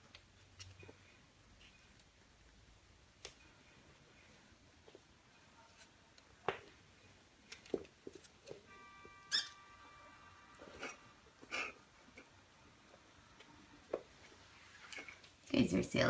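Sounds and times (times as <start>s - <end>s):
thin high-pitched tone: 8.7s - 11.2s.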